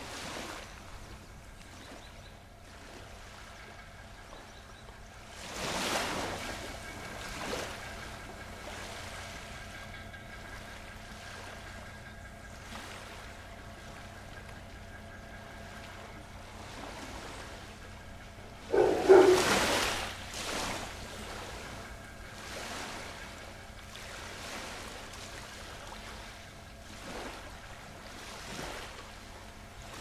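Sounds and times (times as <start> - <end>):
ocean waves washing in: 0.0 - 2.0, 5.3 - 11.9, 15.3 - 30.0
faint steady hum: 0.0 - 30.0.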